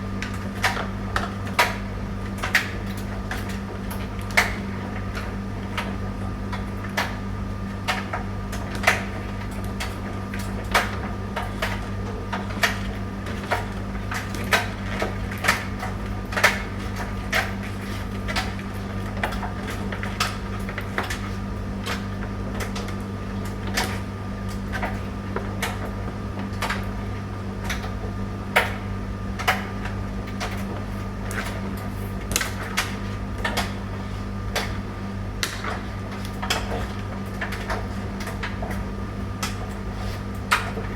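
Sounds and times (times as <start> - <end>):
tumble dryer motor hum: 0.0 - 40.9.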